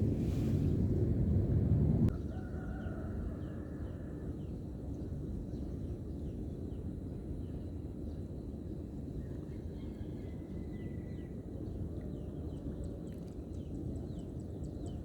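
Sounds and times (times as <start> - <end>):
steady low rumble: 0.0 - 2.1.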